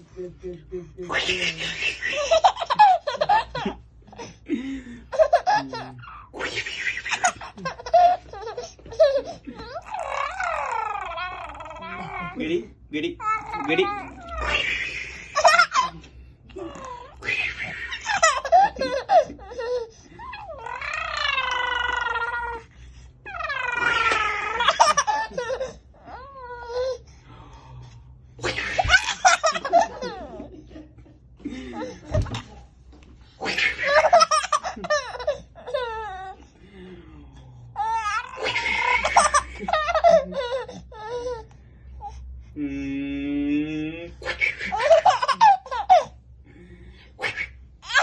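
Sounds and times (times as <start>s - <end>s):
person laughing: 1.1s - 9.9s, 14.4s - 19.8s, 28.4s - 32.5s
child laughing: 16.7s - 20.9s, 28.4s - 30.8s, 33.4s - 36.3s
girl laughing playfully: 17.5s - 19.7s, 28.4s - 32.4s.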